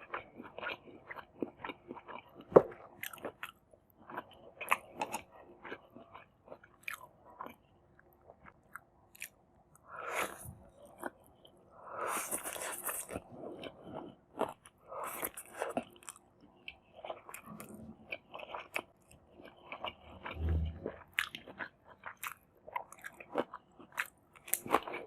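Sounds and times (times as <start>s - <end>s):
close chewing and crunching: 0.0s - 25.0s
rushing sound: 20.4s - 21.0s.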